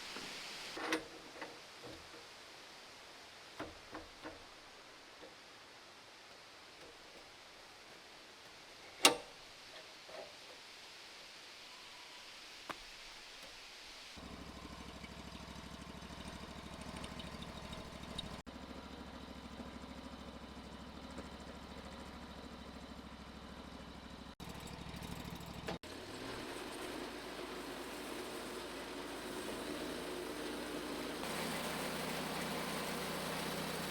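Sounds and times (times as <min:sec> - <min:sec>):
click: 0:09.0 - 0:09.2
engine running steadily: 0:14.2 - 0:33.9.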